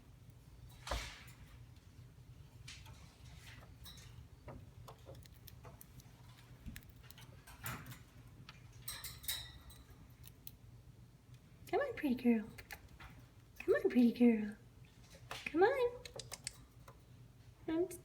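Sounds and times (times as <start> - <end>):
bird clicks and taps on cage: 2.6 - 10.6, 12.5 - 13.7, 15.1 - 17.0.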